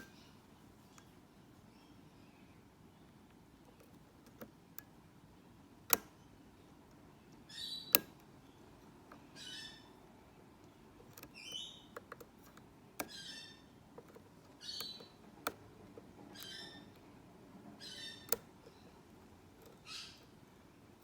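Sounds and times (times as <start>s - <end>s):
bird chirping: 0.0s - 3.9s, 6.2s - 12.2s, 13.0s - 20.8s
lock pick clicking in padlock: 5.8s - 6.2s, 7.3s - 8.3s, 14.0s - 17.1s.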